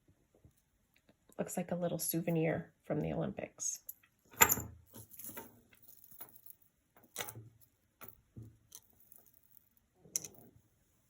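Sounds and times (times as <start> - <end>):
jewelry clicking and clinking: 3.8 - 10.7.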